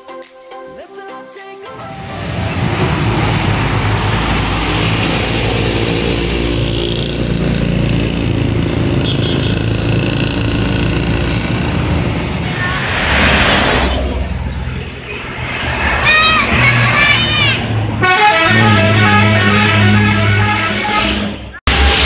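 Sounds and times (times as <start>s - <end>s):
rough rattling diesel bus engine: 1.8s - 12.9s.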